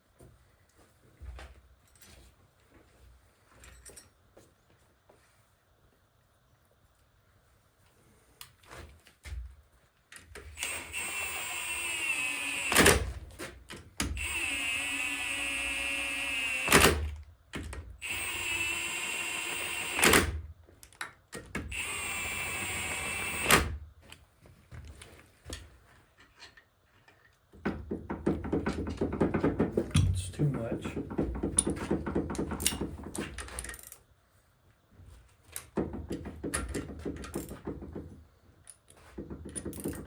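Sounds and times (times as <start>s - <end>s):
power tool whining: 14.2s - 16.8s, 18.0s - 20.2s, 21.7s - 23.5s
clicks and knocks of parts handled: 20.7s - 21.6s.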